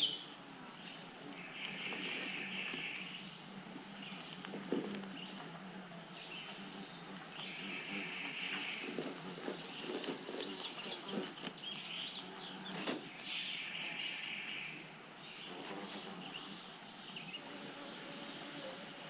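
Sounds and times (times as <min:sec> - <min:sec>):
bird chirps: 0:06.1 - 0:15.6.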